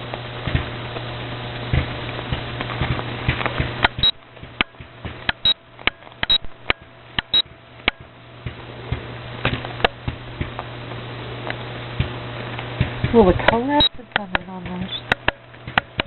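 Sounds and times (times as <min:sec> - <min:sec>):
low steady hum: 0:00.0 - 0:16.0
sharp clicks: 0:03.8 - 0:08.0, 0:13.4 - 0:16.0.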